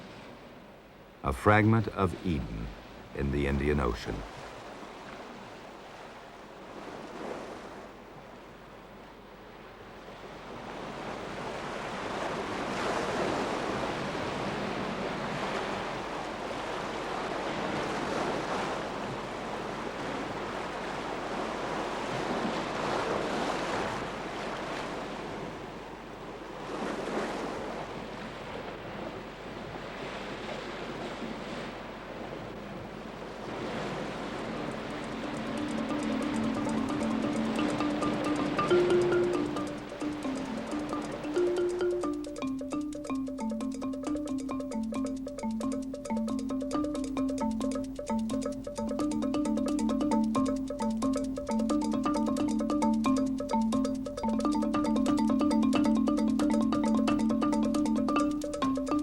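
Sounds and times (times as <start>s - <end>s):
ocean waves breaking: 0.0s - 59.0s.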